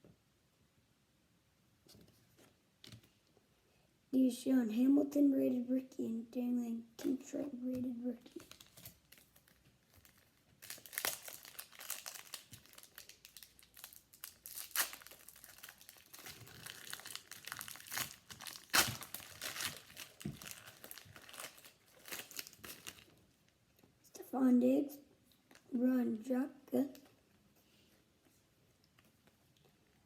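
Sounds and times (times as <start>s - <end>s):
foil wrapper crinkling and tearing: 8.3s - 23.3s.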